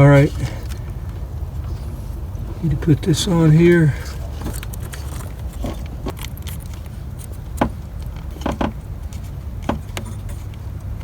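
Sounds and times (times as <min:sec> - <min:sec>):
steady low rumble: 0:00.0 - 0:11.0.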